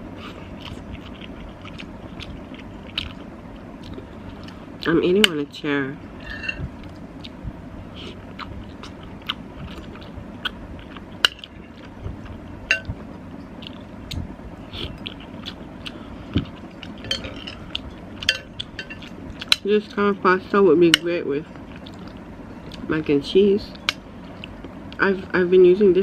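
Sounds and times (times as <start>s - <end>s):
person chewing soft pasta: 0.0s - 4.9s, 6.2s - 19.6s, 21.5s - 22.9s, 23.8s - 25.0s
steady low hum: 0.0s - 26.0s.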